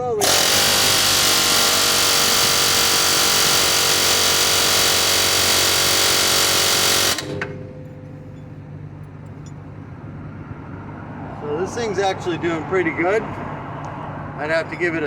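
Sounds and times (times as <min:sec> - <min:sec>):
pneumatic air hammer hammering: 0:00.0 - 0:08.0.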